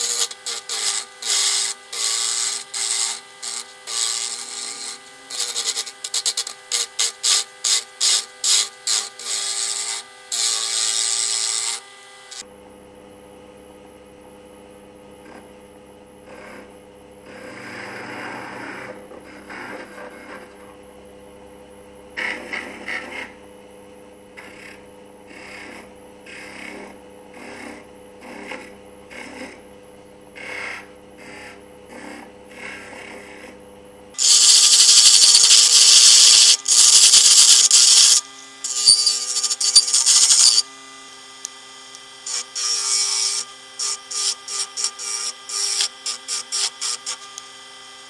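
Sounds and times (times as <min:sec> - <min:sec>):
small lathe motor humming: 0:00.0 - 0:12.5, 0:34.2 - 0:48.0
loud rasping: 0:34.2 - 0:40.6
tool scraping wood: 0:34.2 - 0:40.7.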